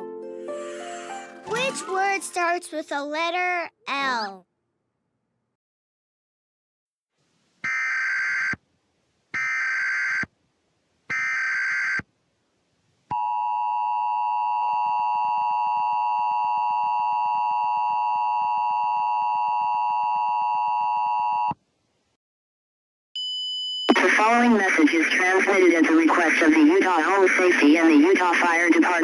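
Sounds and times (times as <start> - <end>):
long steady attention tone: 7.6 - 8.7, 9.4 - 10.4, 11.1 - 12.1, 13.1 - 21.6
data tone bursts: 7.7 - 8.6, 9.4 - 10.3, 11.1 - 12.0.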